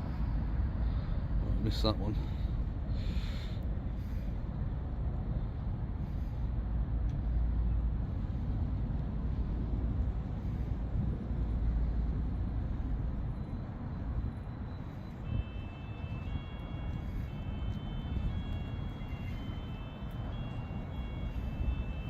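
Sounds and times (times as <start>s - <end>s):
road traffic rumble: 0.0s - 22.0s
faint high steady tones: 13.2s - 22.0s.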